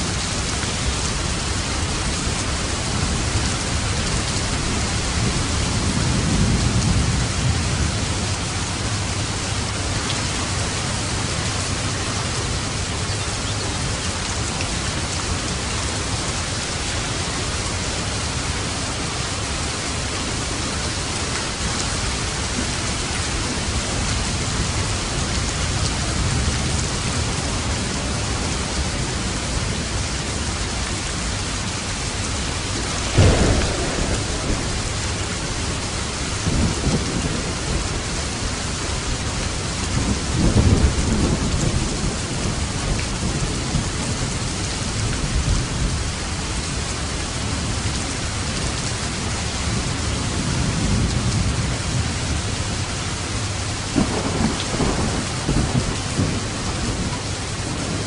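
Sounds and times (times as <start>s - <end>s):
rain on a roof: 0.0s - 58.0s
low rolling thunder rumbles: 0.1s - 30.7s, 31.4s - 48.0s, 49.6s - 58.0s
loud thunderclap: 33.0s - 38.5s, 54.0s - 58.0s.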